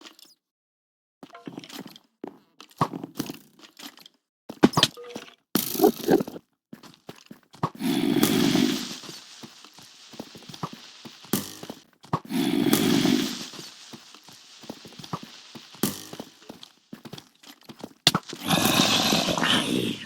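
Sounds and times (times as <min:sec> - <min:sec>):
hiss: 0:07.8 - 0:17.3, 0:18.3 - 0:20.0
cracks knocks and crunching: 0:13.8 - 0:18.4.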